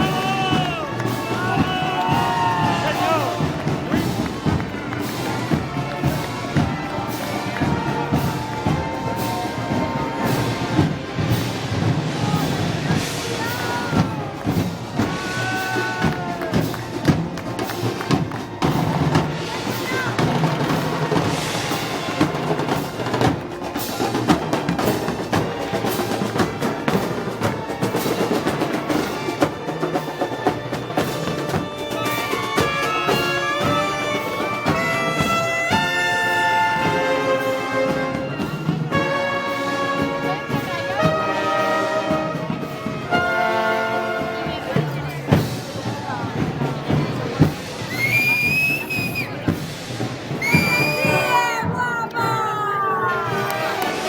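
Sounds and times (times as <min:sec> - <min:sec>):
band playing held notes: 0:00.0 - 0:54.0
steady drum beat: 0:00.0 - 0:54.0
brass sustained notes: 0:32.1 - 0:45.1.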